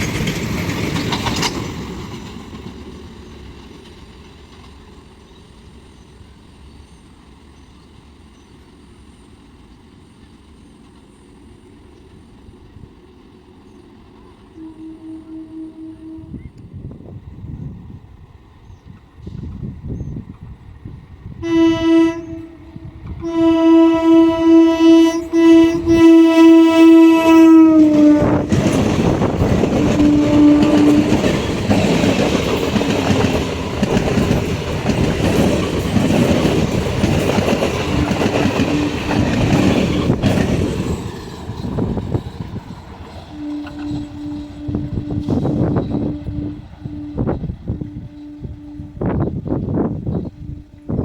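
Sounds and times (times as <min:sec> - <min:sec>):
train rattling past: 0:00.0 - 0:51.0
train horn blasts: 0:14.2 - 0:16.8, 0:21.4 - 0:33.4, 0:43.1 - 0:51.0.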